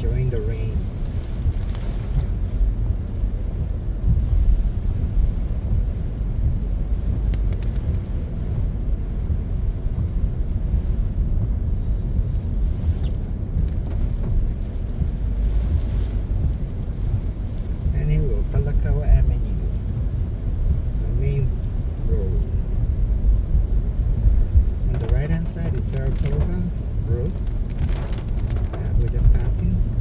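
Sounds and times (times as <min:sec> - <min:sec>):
rain hiss: 0:00.0 - 0:30.0
road and engine rumble: 0:00.0 - 0:30.0
faint ticks: 0:07.2 - 0:08.1.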